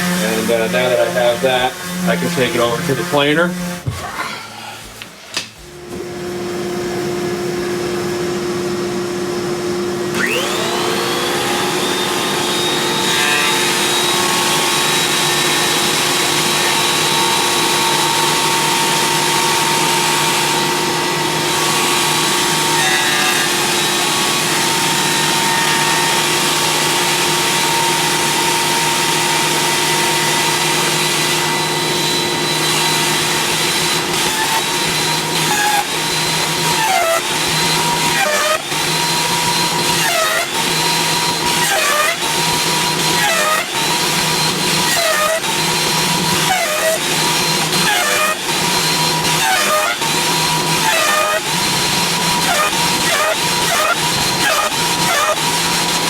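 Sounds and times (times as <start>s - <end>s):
thickness planer running: 0.0s - 4.0s, 5.6s - 56.0s
planer whine: 0.0s - 56.0s.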